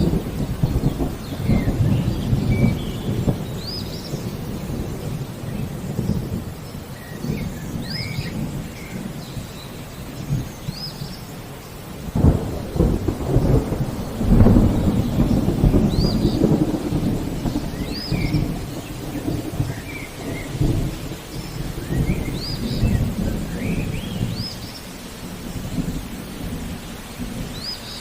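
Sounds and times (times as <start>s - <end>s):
loud thunder clap: 0.0s - 6.6s, 12.1s - 24.5s
steady rain: 0.0s - 28.0s
thunder rumbling: 0.0s - 28.0s.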